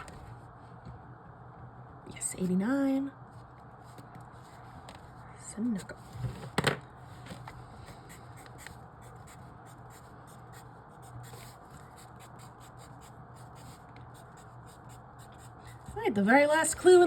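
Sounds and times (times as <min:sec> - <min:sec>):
faint low hum: 0:00.0 - 0:17.0
pencil scratching on paper: 0:08.1 - 0:16.0.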